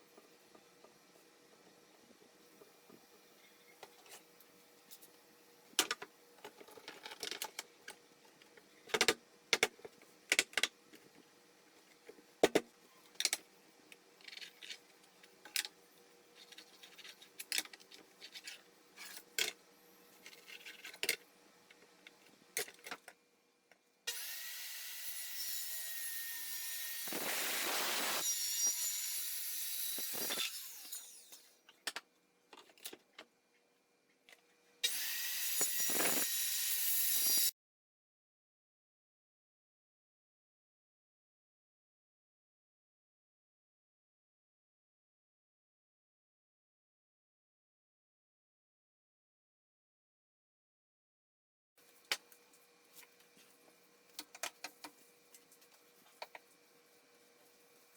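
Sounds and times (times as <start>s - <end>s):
power tool working wood: 24.1s - 31.5s, 34.8s - 37.5s.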